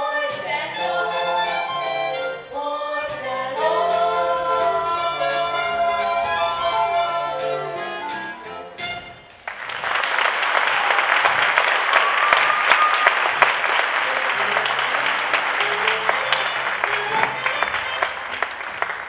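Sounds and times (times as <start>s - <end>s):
music: 0.0s - 9.4s, 13.7s - 19.0s
audience applauding: 9.3s - 19.0s.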